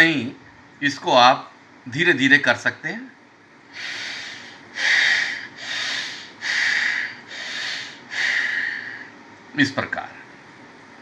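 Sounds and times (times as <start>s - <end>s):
forceful breathing through nose: 3.7s - 9.2s.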